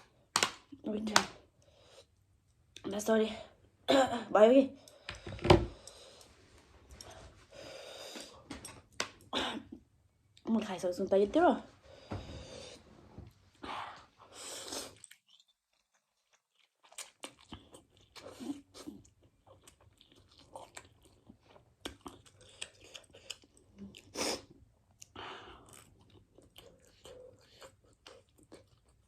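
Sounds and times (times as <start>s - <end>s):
close chewing and biting food: 14.8s - 29.0s.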